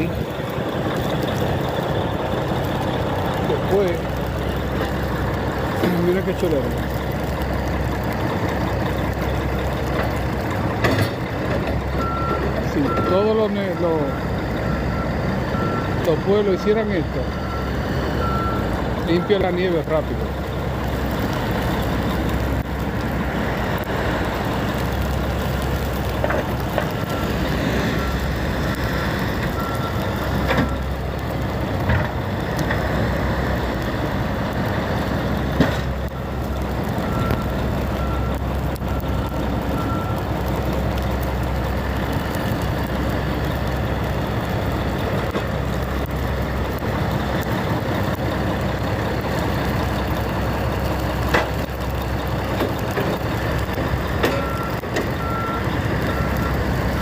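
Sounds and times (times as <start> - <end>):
heavy vehicles running: 0.0 - 57.0
reversing alarm beeping: 12.0 - 20.1, 27.0 - 28.4, 29.5 - 30.9, 36.1 - 40.2, 54.2 - 57.0.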